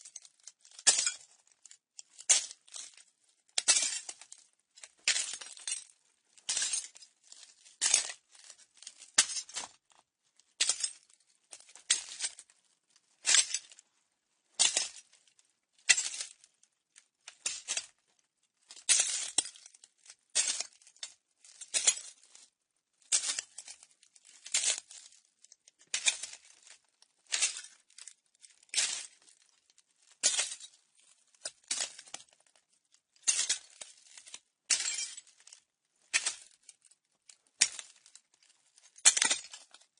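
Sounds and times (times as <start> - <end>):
footsteps crunching on broken glass: 0.8 - 1.3, 3.6 - 4.4, 5.0 - 5.8, 6.5 - 9.8, 10.6 - 12.4, 33.2 - 36.6, 37.6 - 39.8.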